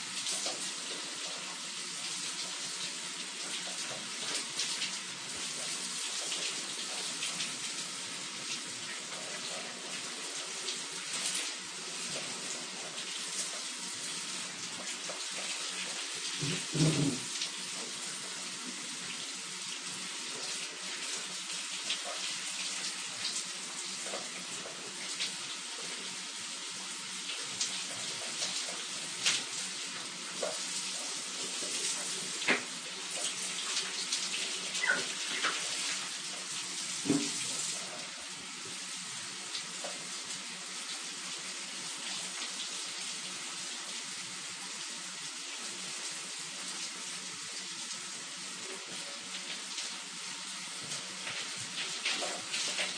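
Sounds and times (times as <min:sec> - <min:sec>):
shower water spray hissing: 0:00.0 - 0:43.3, 0:44.9 - 0:52.9.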